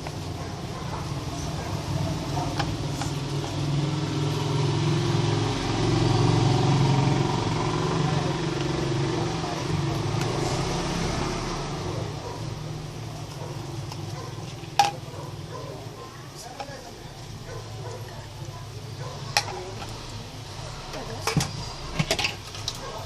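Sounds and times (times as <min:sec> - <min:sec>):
vehicle engine passing by: 0:00.2 - 0:16.1.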